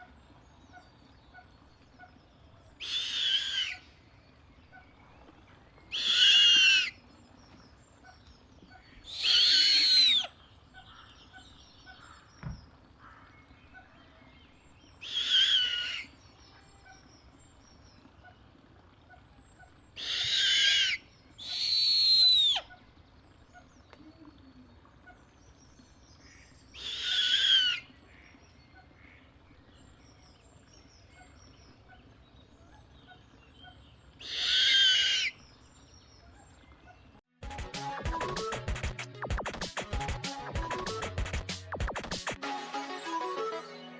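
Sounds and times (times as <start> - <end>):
owl screeching: 2.8 - 3.8, 5.9 - 7.0, 9.0 - 10.3, 15.0 - 16.1, 20.0 - 22.7, 26.8 - 27.9, 34.2 - 35.4.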